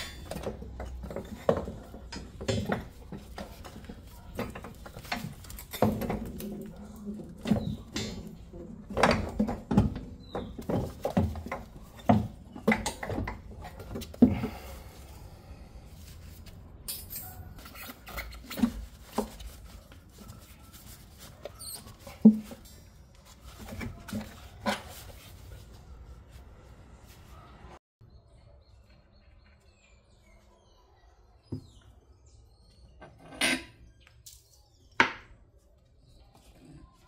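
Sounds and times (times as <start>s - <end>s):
tools and metal parts clanking: 0.0s - 14.4s, 16.8s - 25.2s.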